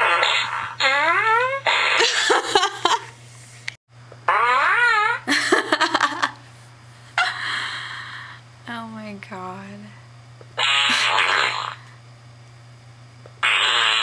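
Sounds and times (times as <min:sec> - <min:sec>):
fart sound effects: 0:00.0 - 0:02.6, 0:04.2 - 0:05.3, 0:10.6 - 0:11.9, 0:13.3 - 0:14.0
low electrical hum: 0:00.0 - 0:14.0.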